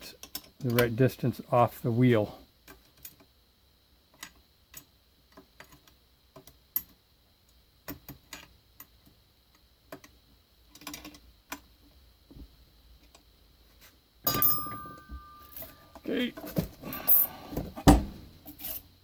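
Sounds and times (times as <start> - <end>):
small metal parts clicking: 9.9 - 11.7.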